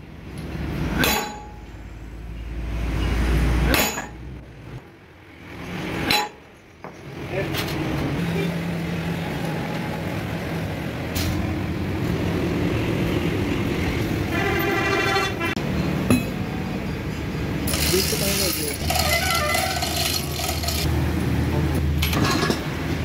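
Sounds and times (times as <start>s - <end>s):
road traffic: 0.0s - 23.0s
vehicle horn: 14.3s - 15.6s, 18.9s - 20.0s.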